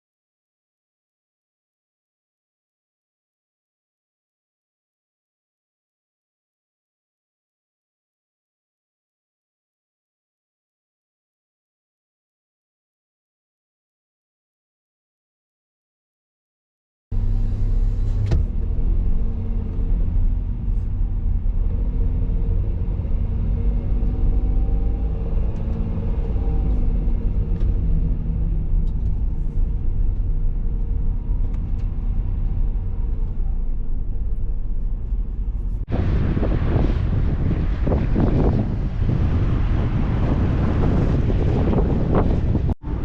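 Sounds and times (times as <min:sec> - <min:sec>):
car engine hum inside car: 0:17.2 - 0:37.5, 0:40.6 - 0:43.0
wind buffeting microphone: 0:25.2 - 0:43.0.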